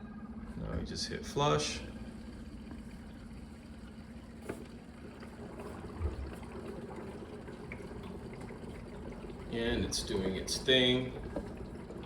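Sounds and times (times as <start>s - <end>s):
water filter pump humming: 0.0s - 12.0s.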